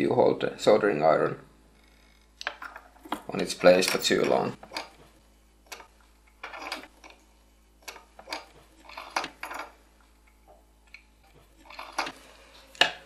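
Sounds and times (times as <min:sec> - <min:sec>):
small metal tools clicking and scraping: 0:05.7 - 0:07.2, 0:07.8 - 0:09.8, 0:11.6 - 0:12.2.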